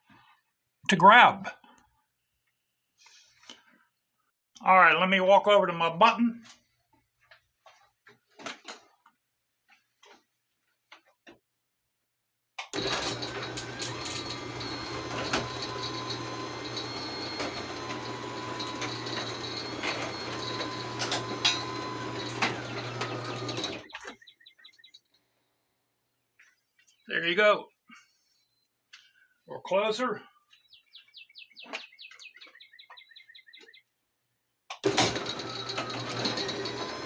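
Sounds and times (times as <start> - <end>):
garage door clicks and whine: 12.7 - 24.2, 34.7 - 37.0
garage door opener motor hum: 12.7 - 24.2, 34.7 - 37.0.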